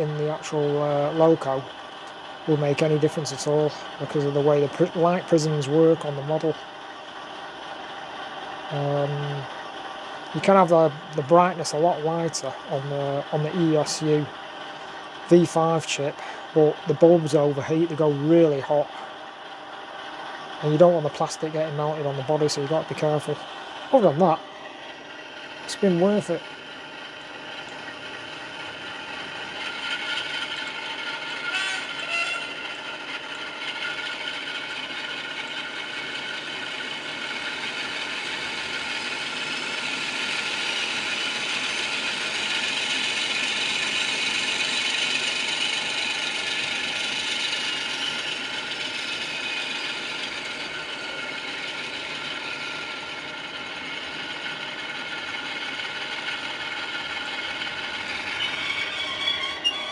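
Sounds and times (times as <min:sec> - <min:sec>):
diesel engine sound from small speaker: 0:00.0 - 0:59.9
model motor and gears whirring: 0:00.0 - 0:59.9.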